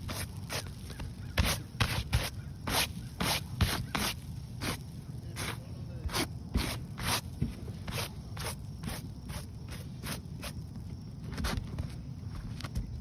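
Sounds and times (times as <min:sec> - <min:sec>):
scraping on roof shingles: 0:00.0 - 0:04.8.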